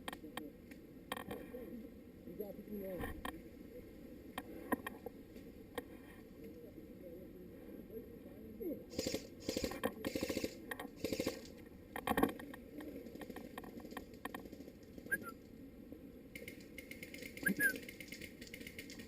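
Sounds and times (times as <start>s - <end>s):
airsoft gun full-auto bursts: 8.9s - 11.5s.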